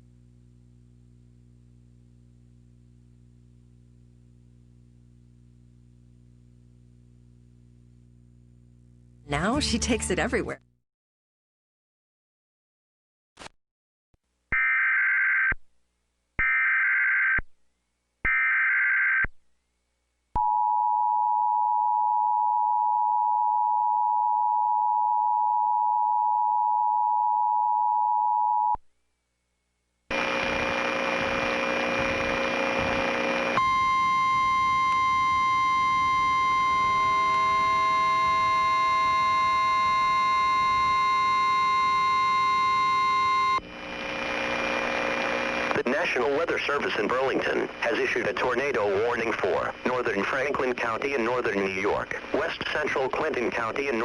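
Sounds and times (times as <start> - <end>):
steady buzzy alert tone: 30.1 - 43.6
screeching data bursts: 33.6 - 43.6
two-tone attention signal: 33.6 - 43.6.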